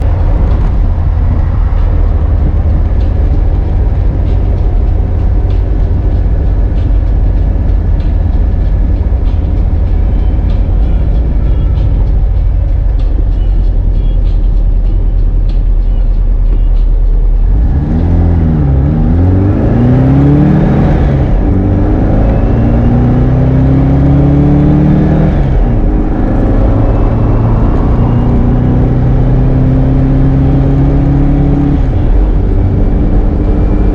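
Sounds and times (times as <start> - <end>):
car engine revving: 17.1 - 33.9.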